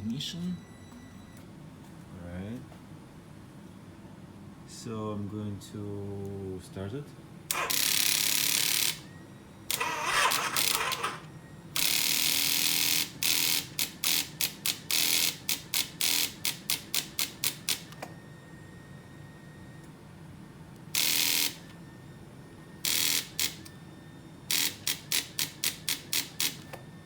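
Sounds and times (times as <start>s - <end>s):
motorcycle starter cracking: 9.7s - 11.3s.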